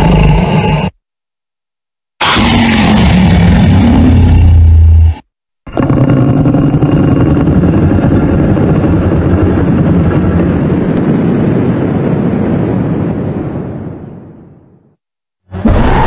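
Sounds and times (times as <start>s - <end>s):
low rough dinosaur roar: 2.2s - 10.2s.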